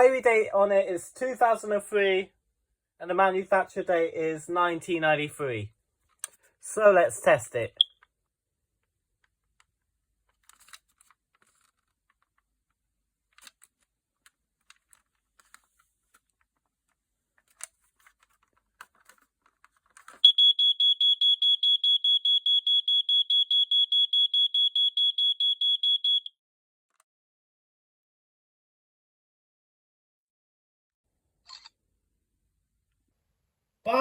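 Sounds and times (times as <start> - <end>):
smoke alarm beeping: 20.2 - 26.3.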